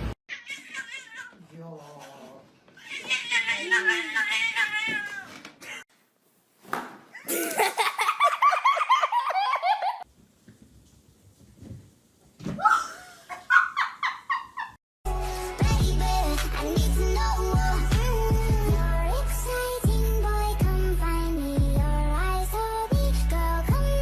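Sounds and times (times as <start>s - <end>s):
high-pitched human laughter: 7.2s - 10.0s.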